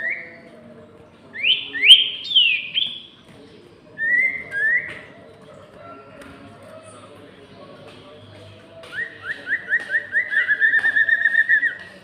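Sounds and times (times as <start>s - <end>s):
songbirds whistling upward notes: 1.3s - 3.2s, 3.9s - 5.2s, 8.9s - 11.8s.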